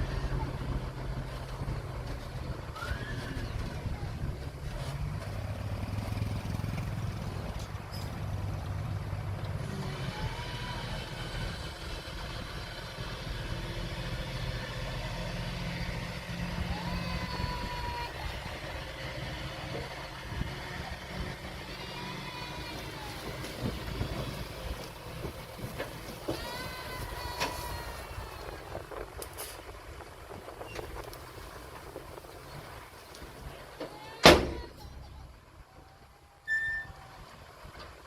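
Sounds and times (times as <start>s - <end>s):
diesel bulldozer engine running: 0.0s - 38.0s
high whistling tones: 36.4s - 37.0s.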